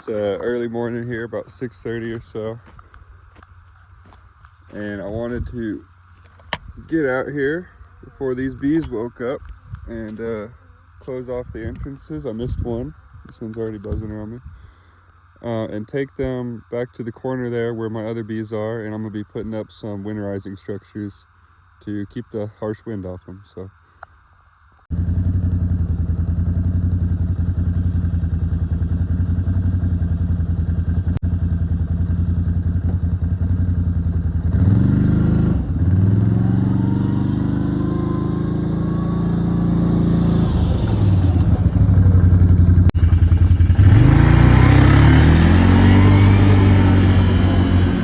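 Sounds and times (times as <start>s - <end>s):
vehicle engine revving: 24.9s - 48.0s.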